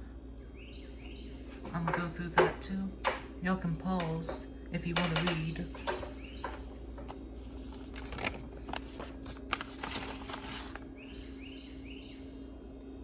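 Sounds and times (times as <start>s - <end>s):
paper rustling: 1.5s - 2.5s, 5.0s - 10.9s.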